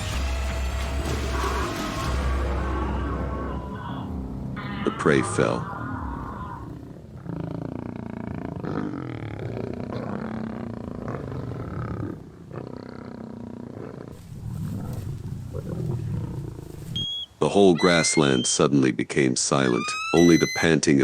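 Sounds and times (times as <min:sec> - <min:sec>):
lions growling and roaring: 0:00.0 - 0:03.7, 0:05.3 - 0:17.0.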